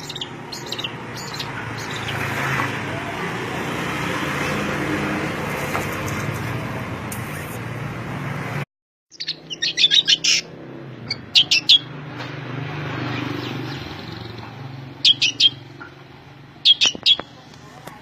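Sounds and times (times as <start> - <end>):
songbird chirping: 0.0 - 2.5, 9.1 - 11.9, 15.0 - 16.0, 16.6 - 17.4.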